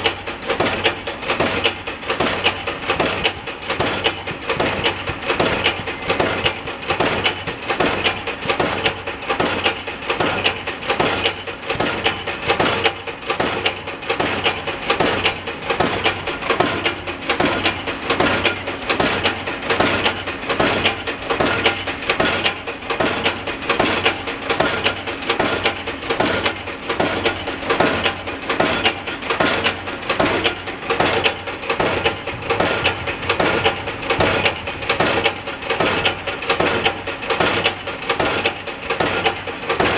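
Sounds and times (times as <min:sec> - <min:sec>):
pile driver metallic blows: 0:00.0 - 0:39.9.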